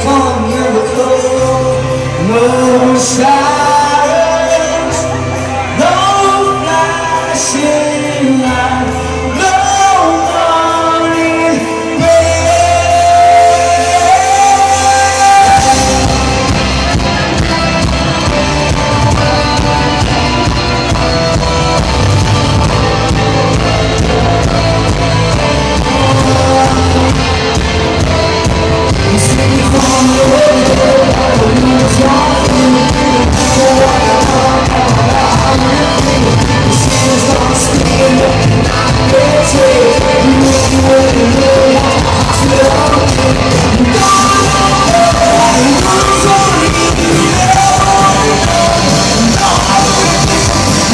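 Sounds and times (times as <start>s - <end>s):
lead singer singing: 0.0s - 50.9s
rock band playing: 0.0s - 50.9s.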